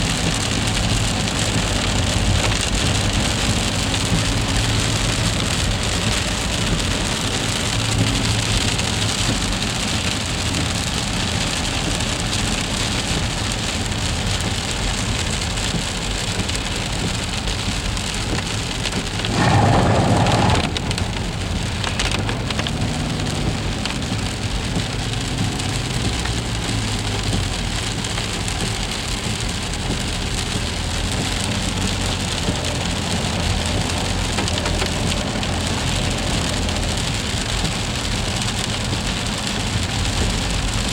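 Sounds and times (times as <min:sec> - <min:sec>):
freezing rain falling: 0:00.0 - 0:40.9
loud noise: 0:19.3 - 0:21.2.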